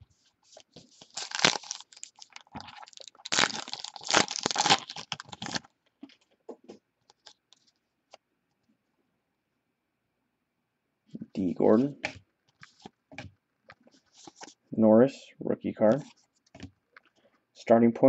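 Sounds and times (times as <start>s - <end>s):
wrapper crinkling and tearing: 0.9s - 5.7s.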